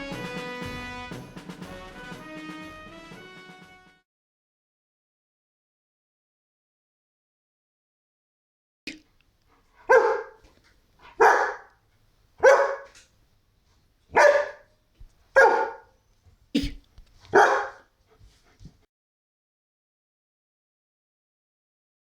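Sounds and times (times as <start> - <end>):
dog barking: 9.8 - 11.8, 12.4 - 13.0, 14.1 - 16.0, 17.3 - 17.9.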